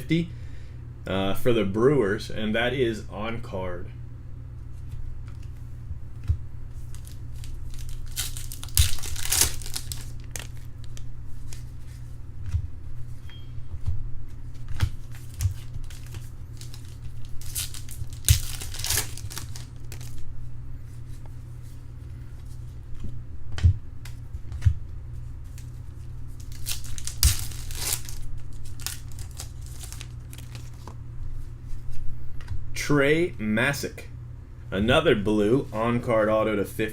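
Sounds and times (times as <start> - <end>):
cards shuffling: 4.7 - 12.6, 14.3 - 20.3, 25.4 - 31.0
foil wrappers tearing and crumpling: 6.8 - 11.7, 14.9 - 20.2, 26.3 - 30.9.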